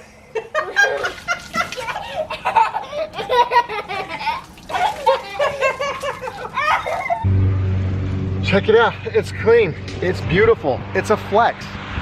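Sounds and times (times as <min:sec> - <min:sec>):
people laughing: 0:00.3 - 0:07.3.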